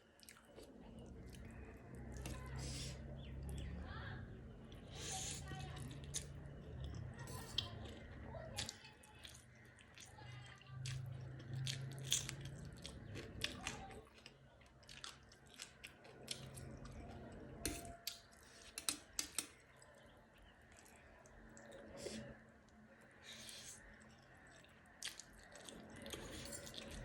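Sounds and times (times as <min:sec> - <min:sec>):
person chewing crunchy food: 0:05.7 - 0:10.2, 0:10.8 - 0:27.0.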